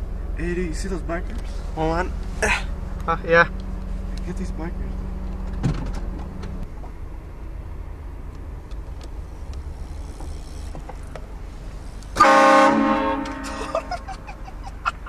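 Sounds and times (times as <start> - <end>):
vehicle engine rumble: 0.0 - 15.0
train horn blasting: 12.2 - 13.8.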